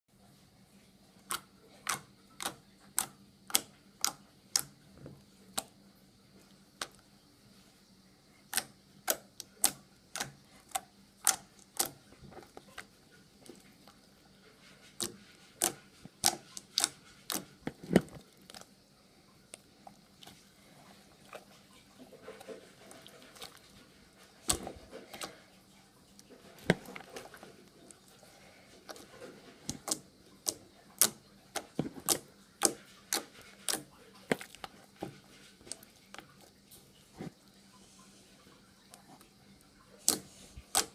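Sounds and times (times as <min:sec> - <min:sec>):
slime clicking and popping: 0:15.0 - 0:18.6.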